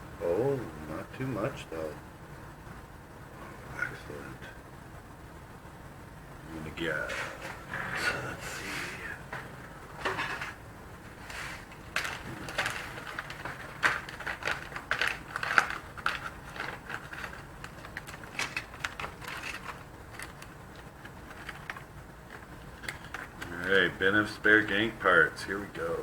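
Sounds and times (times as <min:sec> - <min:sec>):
small hard parts clicking and rattling: 0:11.6 - 0:23.9.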